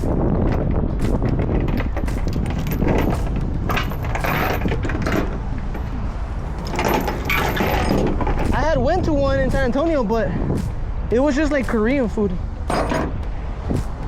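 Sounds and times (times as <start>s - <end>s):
loose things rattling: 0.0s - 9.8s, 12.6s - 13.3s
truck rumbling from inside cab: 0.0s - 11.0s.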